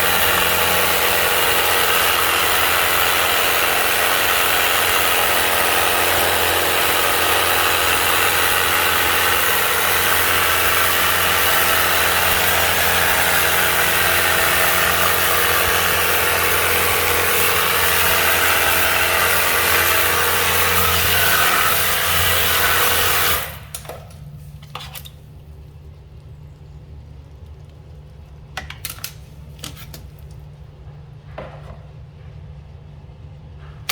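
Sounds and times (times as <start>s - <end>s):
pressure washer motor humming: 0.0s - 24.2s.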